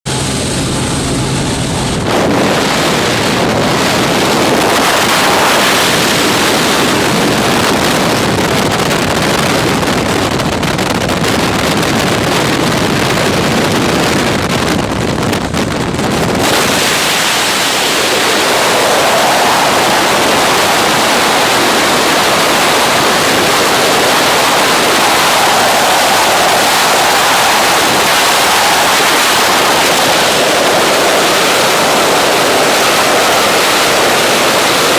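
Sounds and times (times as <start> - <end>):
rushing wind on microphone: 0.0 - 34.9
steady tones: 0.1 - 7.2
aircraft hum: 0.1 - 34.9.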